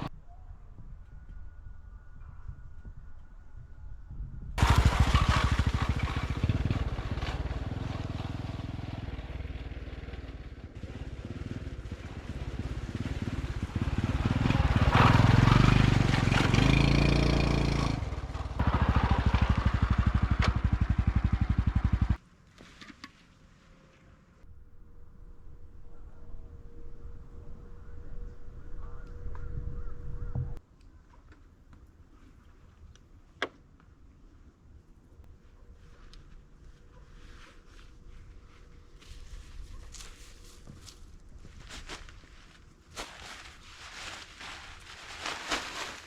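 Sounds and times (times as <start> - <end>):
motorcycle engine running: 4.6 - 22.2, 24.5 - 30.6.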